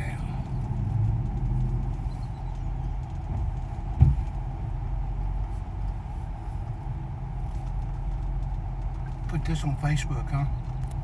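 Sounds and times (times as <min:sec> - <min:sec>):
engine and road noise in cab: 0:00.0 - 0:11.0
low thump: 0:03.3 - 0:04.4.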